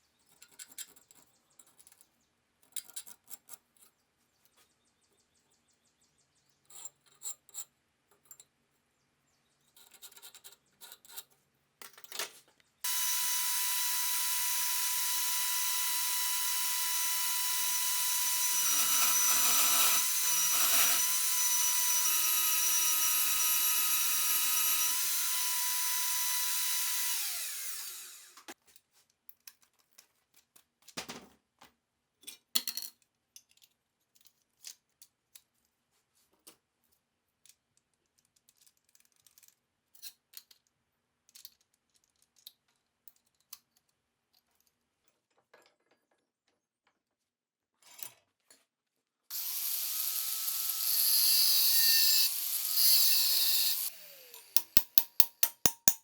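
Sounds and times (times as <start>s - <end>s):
power tool whining: 12.9s - 28.5s, 49.3s - 55.9s.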